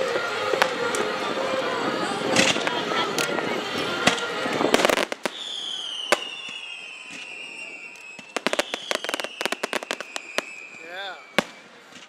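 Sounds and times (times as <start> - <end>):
fireworks bangs: 0.0 - 12.0
fireworks whistle falling: 4.1 - 12.0.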